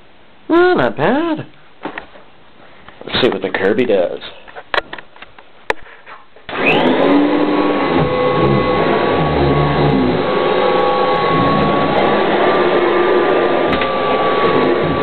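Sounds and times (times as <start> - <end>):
vacuum cleaner motor running: 6.5 - 15.0.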